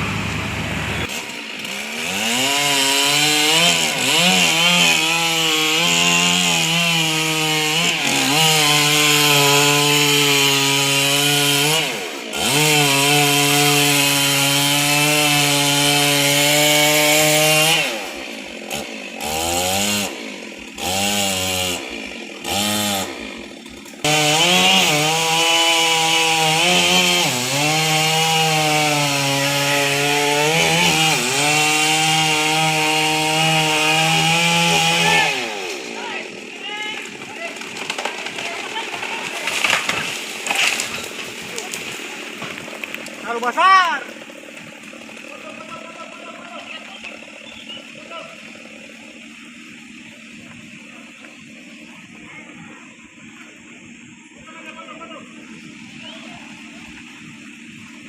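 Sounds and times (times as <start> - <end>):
chainsaw cutting a tree: 0.0 - 58.0.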